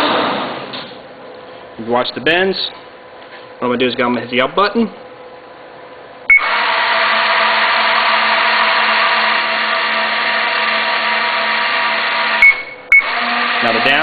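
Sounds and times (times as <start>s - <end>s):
machine drive whirring: 6.3s - 14.0s
electronic beep: 12.4s - 13.1s.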